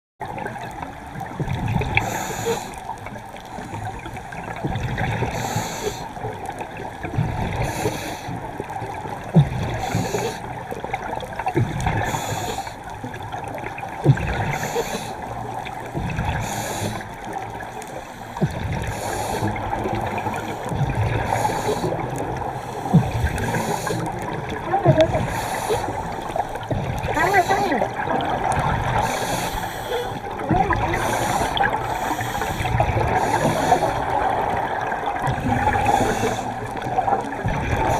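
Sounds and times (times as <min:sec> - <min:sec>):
underwater crackling and knocking: 0:00.2 - 0:37.9
breathing hiss: 0:02.0 - 0:02.8, 0:05.3 - 0:06.2, 0:07.6 - 0:08.4, 0:09.7 - 0:10.5, 0:12.0 - 0:12.9, 0:14.4 - 0:15.2, 0:16.3 - 0:19.6, 0:20.2 - 0:24.2, 0:25.2 - 0:27.8, 0:29.0 - 0:30.3, 0:30.9 - 0:34.6, 0:35.6 - 0:36.9.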